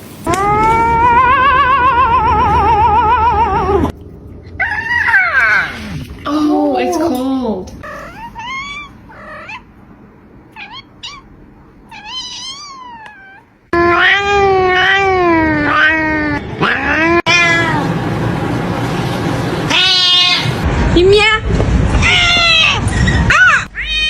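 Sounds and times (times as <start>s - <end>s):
cats meowing: 7.8s - 9.7s, 10.5s - 11.3s, 11.9s - 17.8s, 22.0s - 24.0s.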